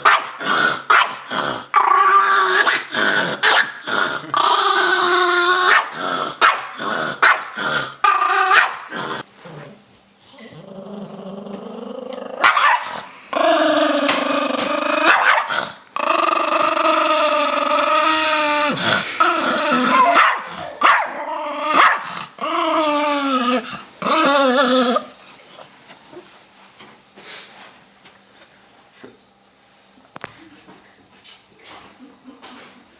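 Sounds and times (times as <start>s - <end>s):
dog barking: 0.0s - 1.2s, 5.7s - 7.6s, 8.5s - 8.9s, 12.4s - 13.1s, 15.1s - 15.6s, 20.0s - 21.2s, 21.8s - 22.1s
dog growling: 0.0s - 25.3s.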